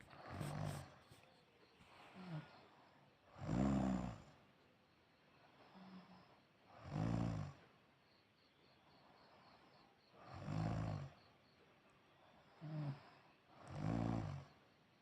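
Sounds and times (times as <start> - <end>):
man snoring: 0.0 - 1.2, 3.3 - 4.4, 6.7 - 7.6, 10.3 - 11.2, 12.6 - 14.6.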